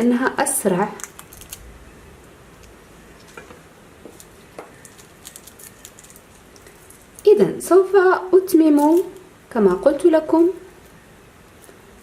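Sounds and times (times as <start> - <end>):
garlic cloves peeled by hand: 0.7 - 7.6, 8.5 - 9.3.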